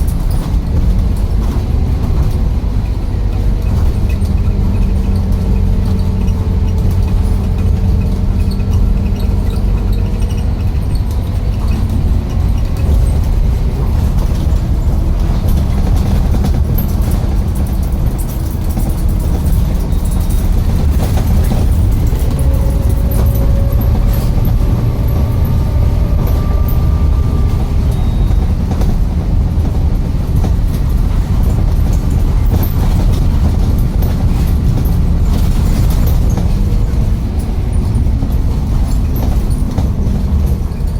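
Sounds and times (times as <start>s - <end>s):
bus engine rumbling: 0.0s - 40.9s.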